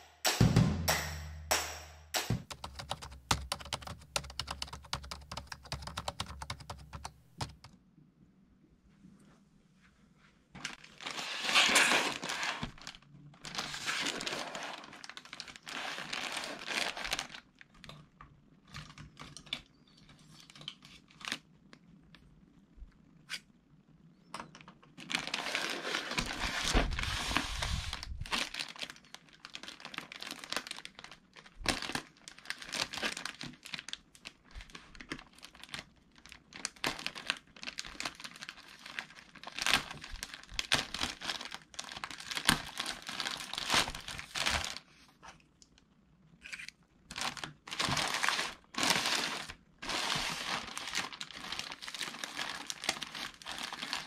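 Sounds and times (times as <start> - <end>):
packaging crinkling and rustling: 10.6 - 21.7, 25.0 - 45.0, 46.5 - 54.0.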